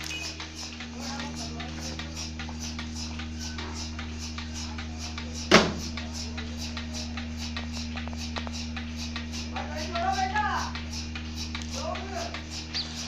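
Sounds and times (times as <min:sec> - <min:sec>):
pulsator ticking hiss: 0:00.0 - 0:13.0
vacuum pump humming: 0:00.0 - 0:13.0
sharp knock: 0:05.5 - 0:05.8.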